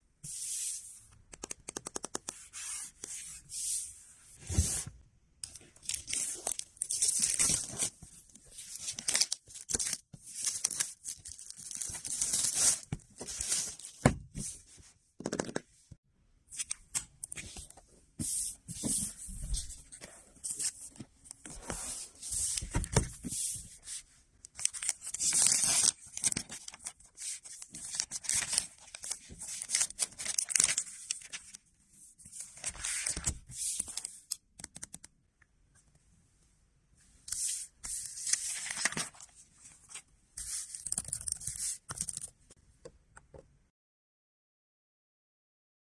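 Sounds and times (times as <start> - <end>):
packaging tearing and rustling: 24.6 - 31.5.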